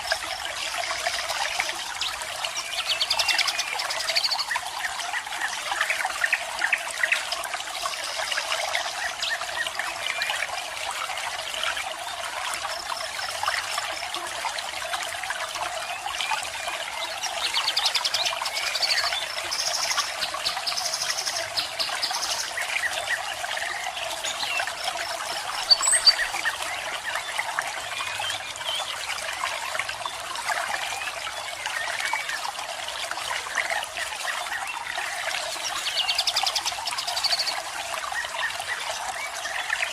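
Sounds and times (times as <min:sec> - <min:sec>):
water trickling and splashing: 0:00.0 - 0:39.9
small birds chirping: 0:24.3 - 0:26.5.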